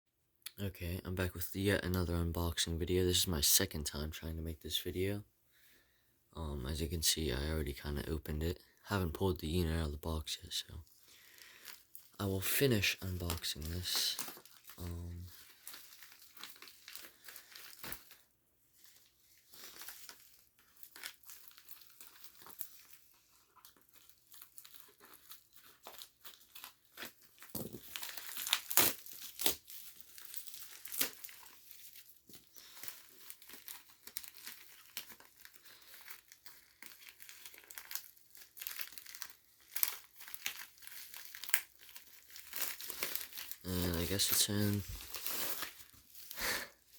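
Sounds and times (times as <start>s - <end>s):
cardboard packaging crinkling and tearing: 10.8s - 46.9s.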